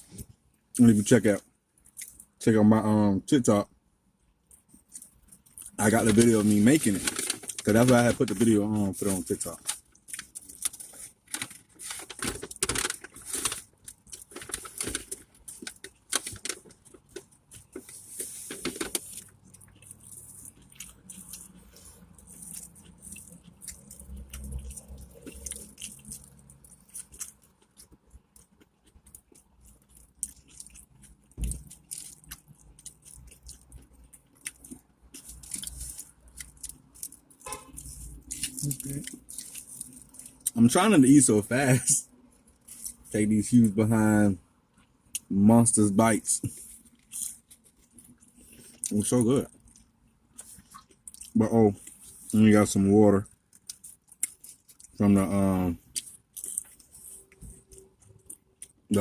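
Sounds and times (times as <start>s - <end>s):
chewing a burger: 0.0s - 2.4s, 4.1s - 59.0s
crisp crackles: 4.9s - 33.6s, 34.3s - 40.8s.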